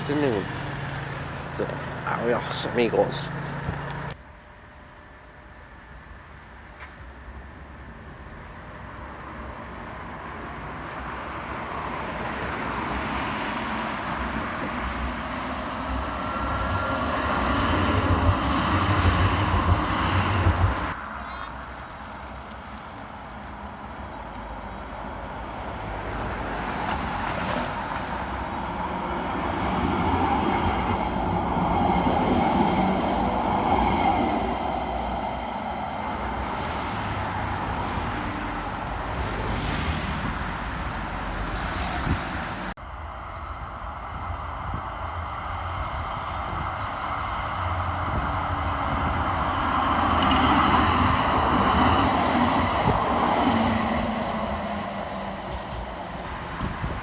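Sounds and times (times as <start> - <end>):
motor vehicles passing: 0.0 - 4.2.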